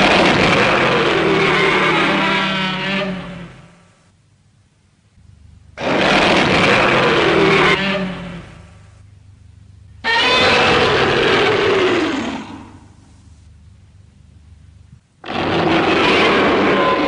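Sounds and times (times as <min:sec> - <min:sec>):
monster roar: 0:00.0 - 0:03.4, 0:05.8 - 0:08.4, 0:10.1 - 0:13.0, 0:15.2 - 0:17.0.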